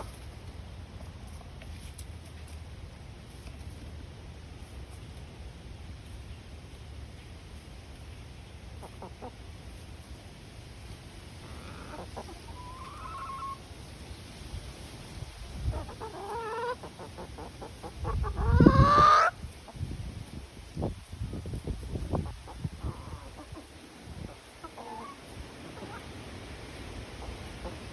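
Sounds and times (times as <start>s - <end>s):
hens clucking: 7.9s - 14.0s, 14.8s - 27.9s
hen squawking: 15.7s - 19.3s.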